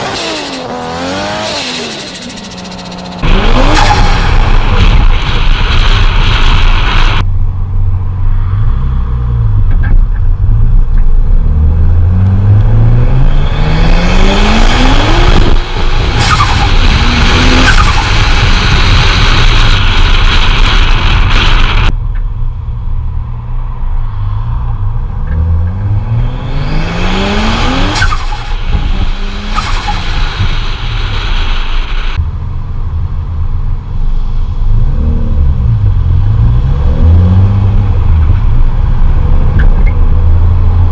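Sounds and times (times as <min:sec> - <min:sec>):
car engines accelerating hard: 0:00.0 - 0:07.3, 0:08.5 - 0:21.9, 0:24.4 - 0:32.2.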